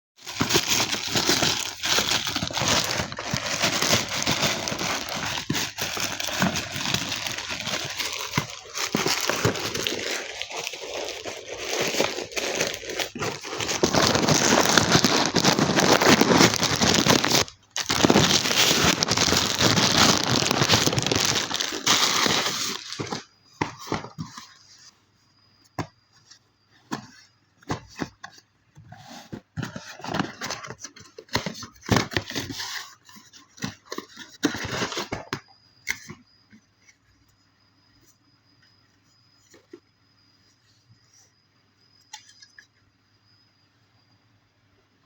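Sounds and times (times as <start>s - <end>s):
plastic packaging crinkling: 0.2s - 23.3s.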